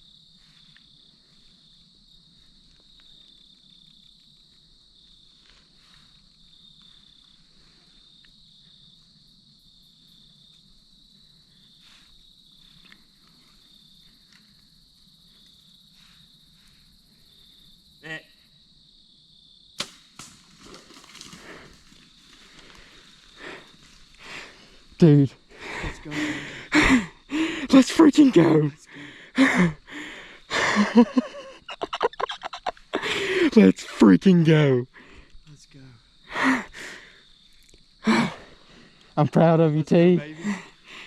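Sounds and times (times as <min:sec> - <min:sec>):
crickets trilling: 0:00.0 - 0:41.0
bow shot crack: 0:19.8 - 0:21.4
rustling in leaves and brush: 0:19.9 - 0:25.0.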